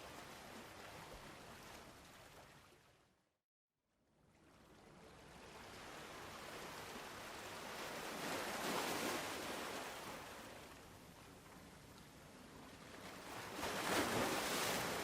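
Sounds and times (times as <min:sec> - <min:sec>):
ocean waves breaking: 0:05.8 - 0:10.6, 0:13.1 - 0:15.0.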